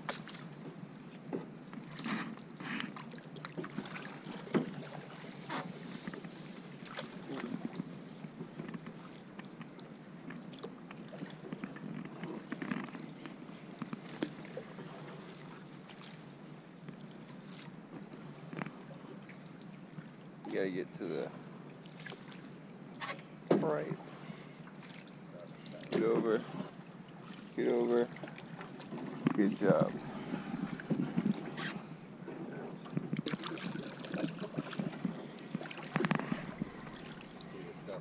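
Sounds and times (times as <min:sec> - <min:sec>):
low water wash: 0:00.0 - 0:38.0
paddle strokes splashing water: 0:01.8 - 0:09.3, 0:21.8 - 0:38.0.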